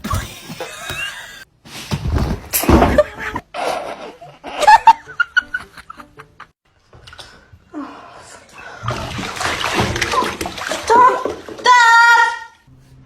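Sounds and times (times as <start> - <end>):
person laughing: 0.4 - 1.4, 2.9 - 6.4
snickering: 3.0 - 6.4.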